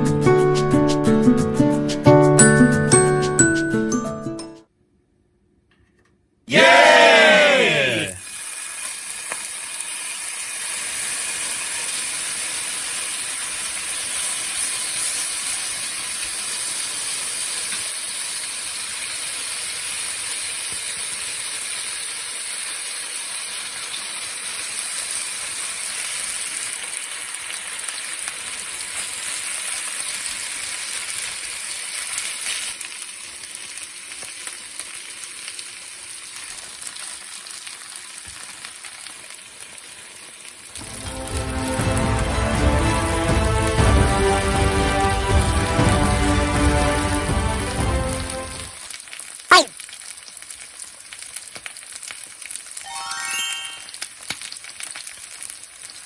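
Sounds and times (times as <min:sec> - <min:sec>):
batter sizzling in a pan: 0:08.2 - 0:40.9, 0:48.5 - 0:52.8, 0:53.8 - 0:56.0.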